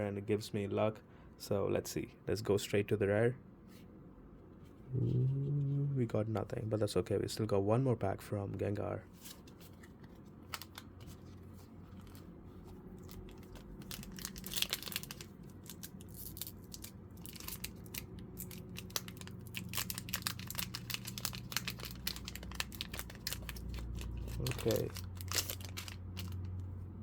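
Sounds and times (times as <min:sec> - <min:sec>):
foil wrapper tearing and crinkling: 0:10.5 - 0:11.3, 0:13.0 - 0:26.5.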